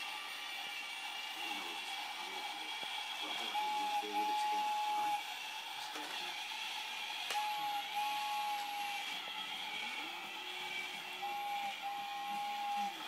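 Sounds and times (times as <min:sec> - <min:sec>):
toy train whistle: 0:03.5 - 0:05.3, 0:07.3 - 0:13.0.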